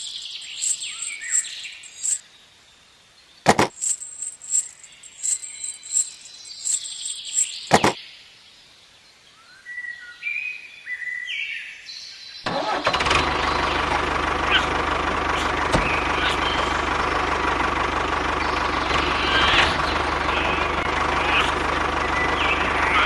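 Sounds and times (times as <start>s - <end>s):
high chirping tones: 0.0s - 2.2s, 3.5s - 8.0s
clicks: 3.5s - 8.0s
engine idling roughly: 12.5s - 23.0s.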